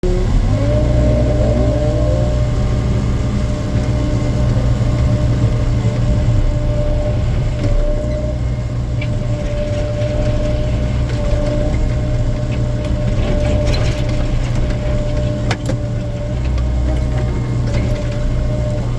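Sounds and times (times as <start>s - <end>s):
rising tones: 0.0s - 9.0s
excavator diesel engine running: 0.0s - 18.9s
hydraulic whine: 0.0s - 18.9s.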